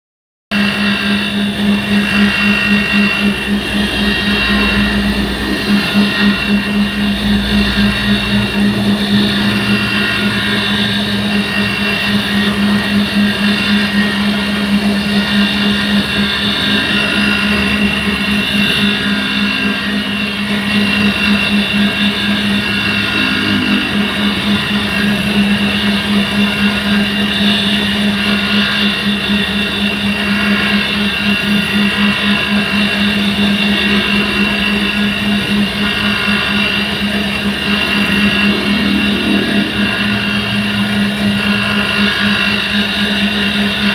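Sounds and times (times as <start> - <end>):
grinding machine motor hum: 0.6 - 43.9.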